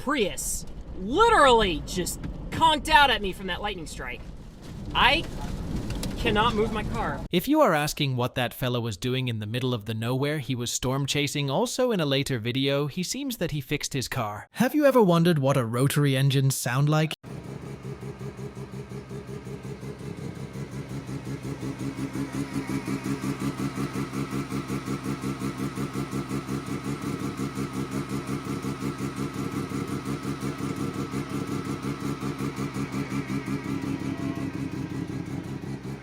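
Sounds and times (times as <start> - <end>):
rotary engine idling: 17.2 - 36.0.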